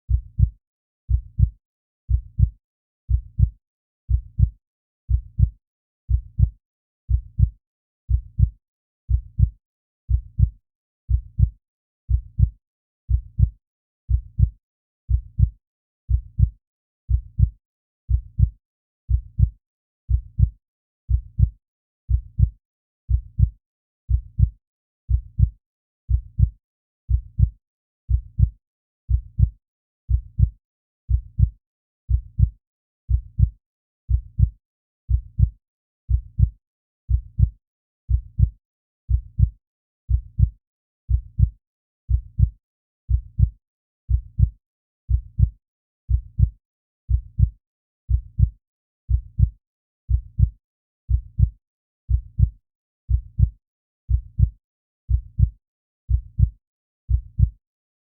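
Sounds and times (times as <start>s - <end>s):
heartbeat: 0.1s - 1.5s, 2.1s - 2.5s, 3.1s - 3.5s, 4.1s - 4.5s, 5.1s - 5.5s, 6.1s - 6.5s, 7.1s - 7.5s, 8.1s - 8.5s, 9.1s - 9.5s, 10.1s - 10.5s, 11.1s - 11.5s, 12.1s - 12.5s, 13.1s - 13.5s, 14.1s - 14.5s, 15.1s - 15.5s, 16.1s - 16.5s, 17.1s - 17.5s, 18.1s - 18.5s, 19.1s - 19.5s, 20.1s - 20.5s, 21.1s - 21.5s, 22.1s - 22.5s, 23.1s - 23.5s, 24.1s - 24.5s, 25.1s - 25.5s, 26.1s - 26.5s, 27.1s - 27.5s, 28.1s - 28.5s, 29.1s - 29.5s, 30.1s - 30.5s, 31.1s - 31.5s, 32.1s - 33.5s, 34.1s - 34.5s, 35.1s - 35.5s, 36.1s - 36.5s, 37.1s - 38.5s, 39.1s - 39.5s, 40.1s - 40.5s, 41.1s - 41.5s, 42.1s - 42.5s, 43.1s - 43.5s, 44.1s - 44.5s, 45.1s - 45.5s, 46.1s - 46.5s, 47.1s - 47.5s, 48.1s - 48.5s, 49.1s - 49.5s, 50.1s - 50.5s, 51.1s - 51.5s, 52.1s - 52.5s, 53.1s - 53.5s, 54.1s - 54.5s, 55.1s - 56.5s, 57.1s - 57.6s.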